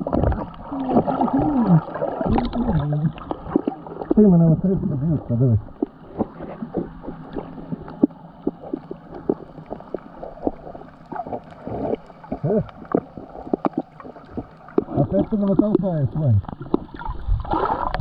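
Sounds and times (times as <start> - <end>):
water sloshing and gurgling: 0.0 - 18.0
muffled voice: 4.2 - 5.7, 12.4 - 12.7, 15.0 - 16.4.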